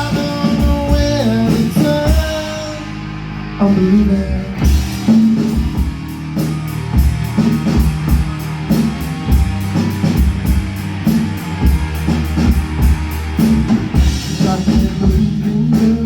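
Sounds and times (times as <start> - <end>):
drum kit beat: 0.0 - 2.7, 4.6 - 16.0
bass guitar: 0.0 - 16.0
electric guitar: 0.0 - 16.0.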